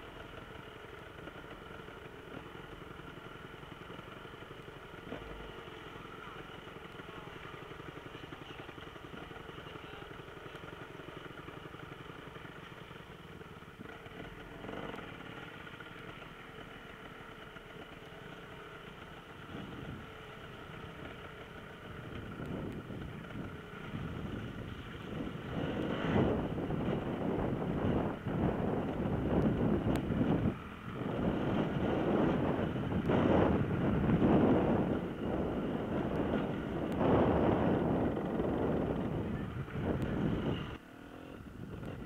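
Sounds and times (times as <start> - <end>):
motorcycle engine running: 0.0 - 42.0.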